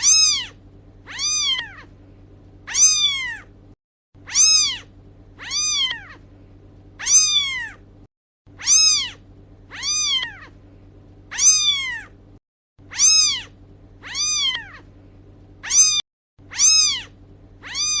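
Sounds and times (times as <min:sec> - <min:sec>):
kitten meowing: 0:00.0 - 0:01.9, 0:02.7 - 0:03.5, 0:04.2 - 0:06.2, 0:07.0 - 0:07.8, 0:08.6 - 0:10.6, 0:11.3 - 0:12.1, 0:12.9 - 0:14.9, 0:15.6 - 0:18.0
faint steady hum: 0:00.0 - 0:18.0.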